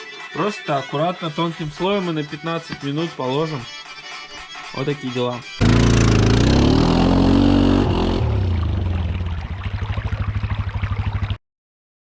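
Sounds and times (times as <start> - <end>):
engine revving and idling: 5.6 - 10.5.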